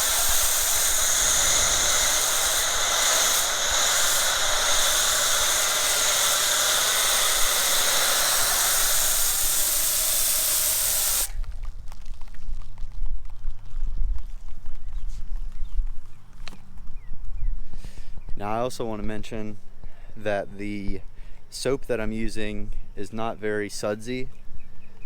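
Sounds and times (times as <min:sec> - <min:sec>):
pressure washer spraying foam: 0:00.0 - 0:11.4.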